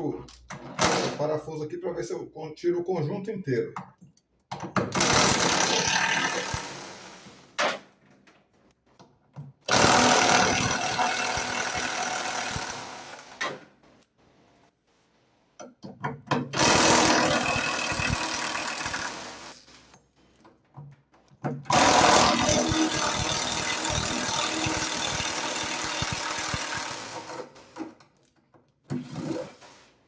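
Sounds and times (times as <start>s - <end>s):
power drill-driver running: 9.7s - 13.4s, 16.6s - 19.6s, 21.7s - 27.6s.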